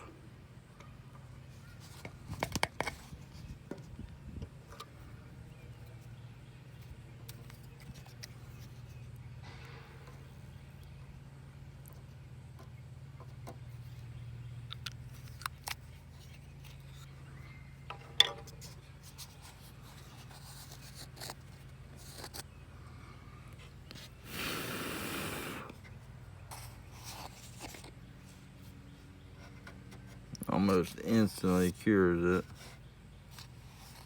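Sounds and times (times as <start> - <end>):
hands handling plastic: 18.2 - 22.5
burst of hiss: 24.2 - 25.8.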